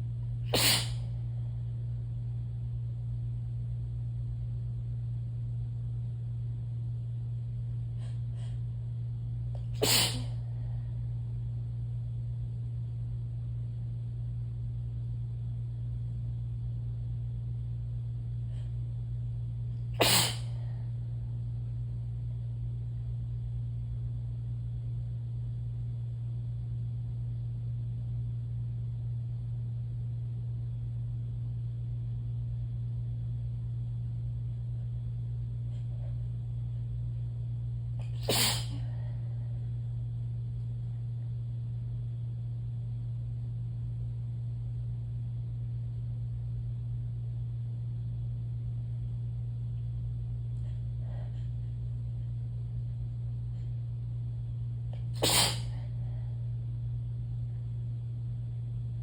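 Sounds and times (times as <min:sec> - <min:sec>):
steady low hum: 0:00.0 - 0:59.0
person sneezing: 0:00.5 - 0:01.1, 0:09.6 - 0:10.5, 0:19.9 - 0:20.8, 0:38.0 - 0:39.0, 0:55.0 - 0:56.0.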